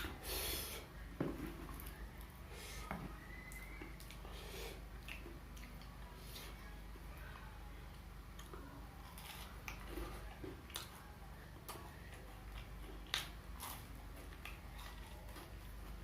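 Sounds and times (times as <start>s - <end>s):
person chewing food: 3.4s - 6.5s, 8.3s - 11.1s, 11.7s - 16.0s.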